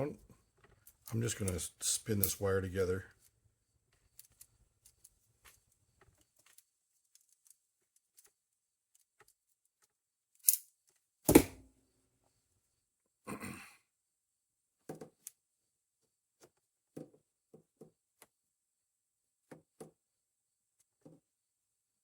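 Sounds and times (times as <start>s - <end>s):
wire ticks and scrapes: 0.5s - 2.5s, 3.9s - 10.7s.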